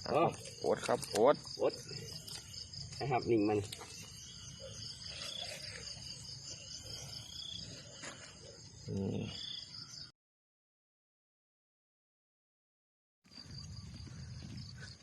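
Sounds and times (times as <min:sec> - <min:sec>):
crickets and insects chirping: 0:00.0 - 0:10.1, 0:13.3 - 0:15.0.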